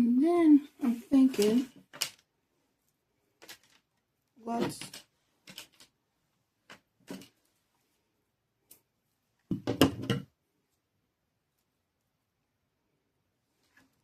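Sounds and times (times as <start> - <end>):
craft materials rustling: 0.8 - 2.3, 3.2 - 6.0.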